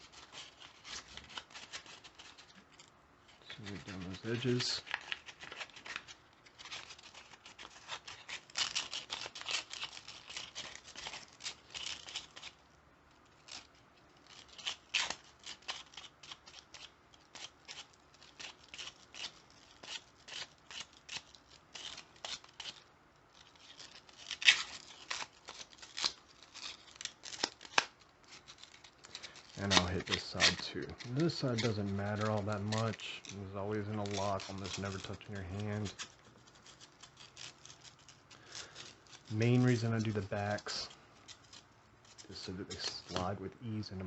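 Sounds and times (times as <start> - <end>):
sandpaper rubbing on tubing: 23.4 - 43.3.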